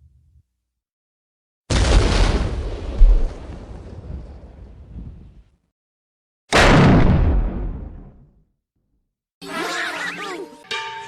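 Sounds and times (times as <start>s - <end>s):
explosion rumble: 1.7s - 5.4s, 6.6s - 8.3s.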